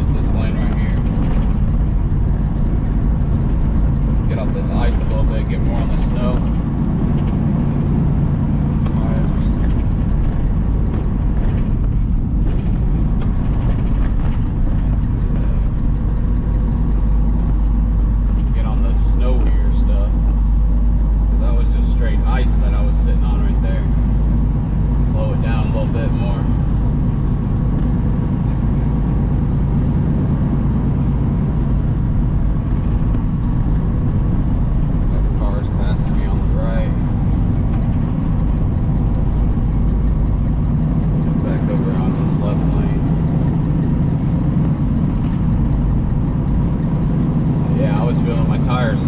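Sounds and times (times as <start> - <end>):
truck engine and tyres rumbling: 0.0 - 49.0.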